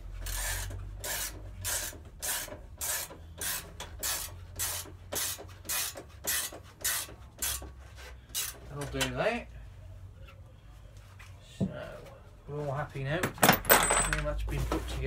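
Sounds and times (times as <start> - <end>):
ratchet spanner rasping: 0.2 - 7.7.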